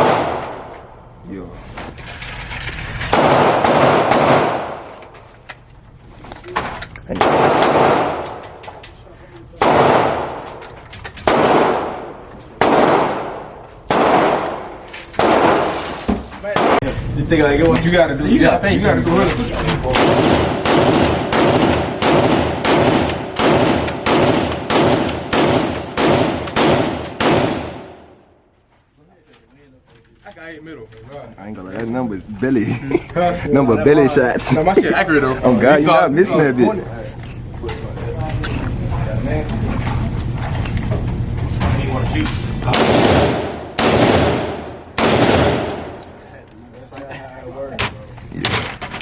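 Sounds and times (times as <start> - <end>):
rifle shots: 0.0 - 0.8, 3.0 - 5.0, 7.1 - 8.6, 9.6 - 15.8, 16.6 - 16.8, 19.9 - 28.2, 42.6 - 46.1.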